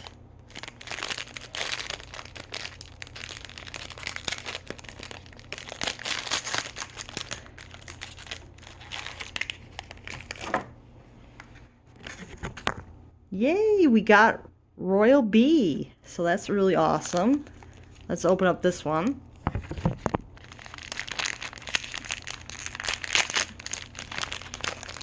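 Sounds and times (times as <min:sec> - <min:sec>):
packaging crinkling: 0:00.0 - 0:10.8, 0:17.0 - 0:18.4, 0:19.4 - 0:25.0.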